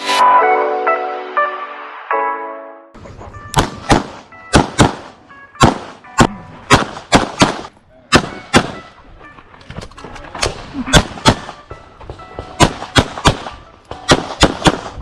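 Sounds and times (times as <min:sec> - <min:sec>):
handgun shots: 0:03.6 - 0:08.9, 0:10.4 - 0:11.6, 0:12.4 - 0:15.0.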